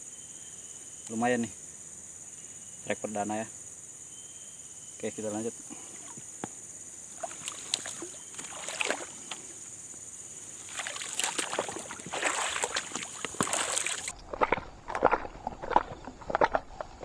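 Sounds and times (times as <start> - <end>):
insects droning: 0.0 - 17.0
water sloshing: 7.1 - 9.7, 10.3 - 17.0.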